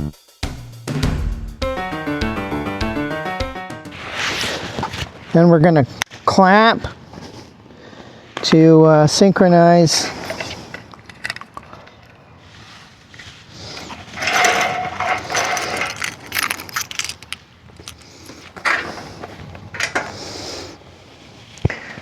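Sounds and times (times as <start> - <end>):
gear handling rustling and scraping: 4.3 - 5.4, 6.0 - 8.6, 9.3 - 22.0.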